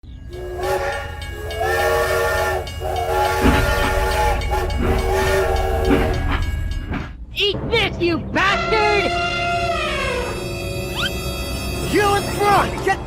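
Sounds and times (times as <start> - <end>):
train rumbling: 0.0 - 12.9
train horn blasts: 0.3 - 6.9.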